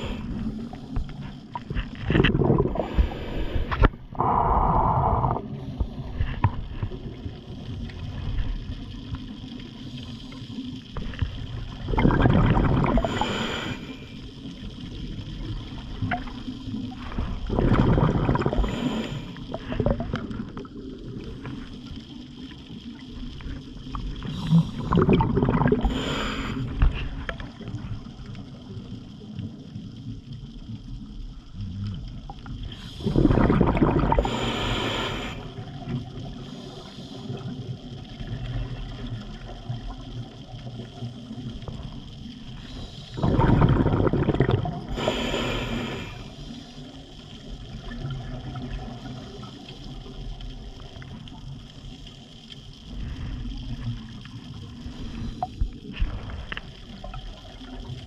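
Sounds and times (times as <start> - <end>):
diver breathing through regulator: 0.0 - 0.9, 2.6 - 6.5, 12.9 - 14.2, 17.0 - 19.8, 24.3 - 27.3, 32.7 - 35.6, 44.9 - 46.8
underwater rush of water: 0.0 - 58.0.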